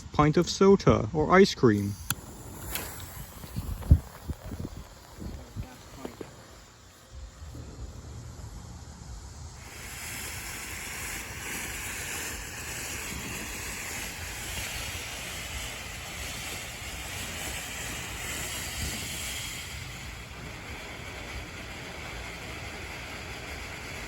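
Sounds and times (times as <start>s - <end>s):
fountain firework hissing: 1.6s - 24.0s.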